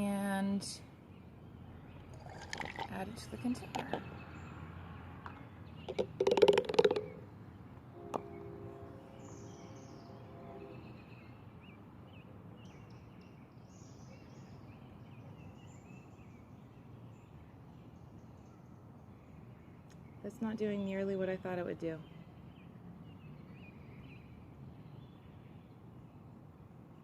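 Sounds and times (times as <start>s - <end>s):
birds chirping: 0.0s - 25.7s
handling noise: 5.2s - 7.2s.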